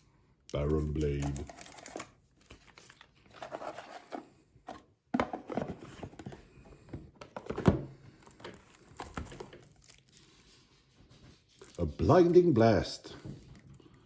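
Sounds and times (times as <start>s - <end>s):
cards and plastic bags rustling: 0.5s - 10.7s.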